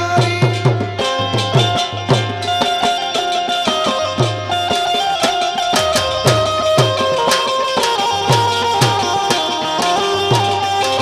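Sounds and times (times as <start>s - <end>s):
held melody line: 0.4s - 11.0s
hand drum bass strokes: 5.7s - 9.2s.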